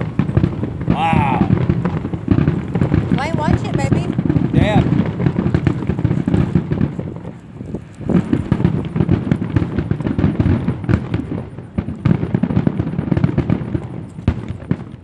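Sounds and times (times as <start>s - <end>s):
fireworks bangs and crackle: 0.0s - 15.0s.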